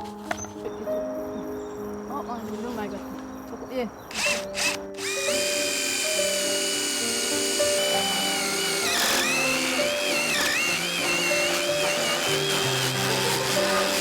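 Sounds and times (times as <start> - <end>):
background music: 0.0 - 14.0
power tool motor whining: 4.1 - 14.0.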